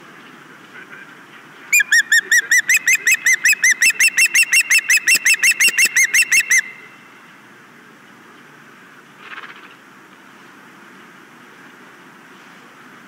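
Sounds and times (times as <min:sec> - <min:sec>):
osprey high chirps: 0:01.7 - 0:07.2.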